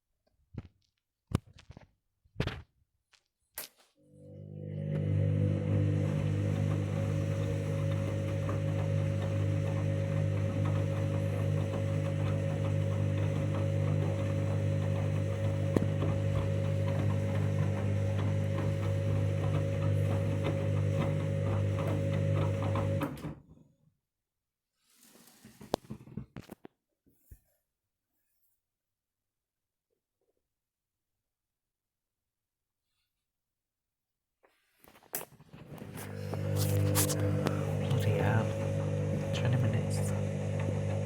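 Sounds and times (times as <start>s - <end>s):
washing machine humming: 4.1s - 23.4s, 35.5s - 41.0s.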